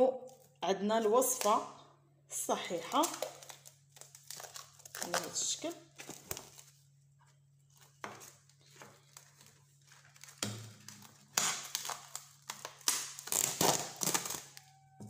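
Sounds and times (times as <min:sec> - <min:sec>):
plastic covering crinkling: 0:02.8 - 0:15.0.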